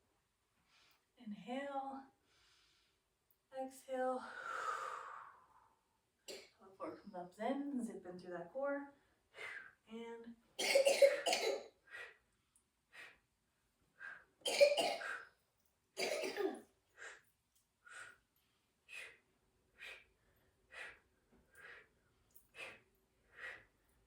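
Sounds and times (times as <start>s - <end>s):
person coughing: 10.6s - 11.7s, 14.4s - 15.2s, 16.0s - 16.6s.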